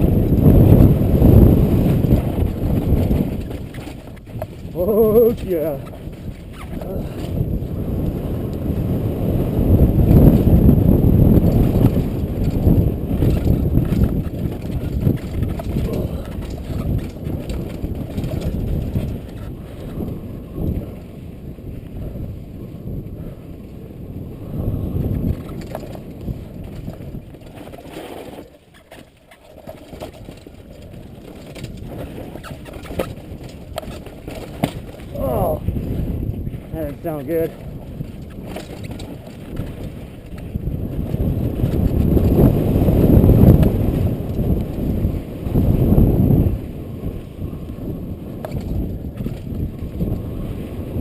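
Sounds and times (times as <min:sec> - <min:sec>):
wind buffeting microphone: 0:00.0 - 0:28.9, 0:29.5 - 0:51.0
scraping over snow: 0:11.5 - 0:51.0.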